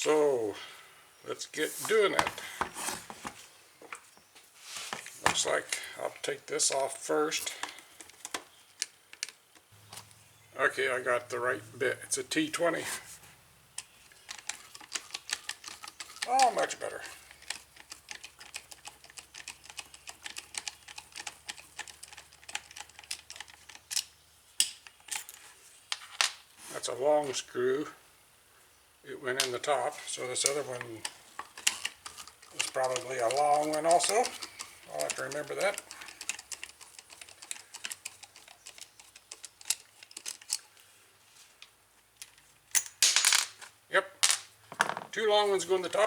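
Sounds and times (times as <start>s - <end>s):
clicks and taps of screws: 7.4s - 10.1s, 13.7s - 26.4s, 30.4s - 40.8s.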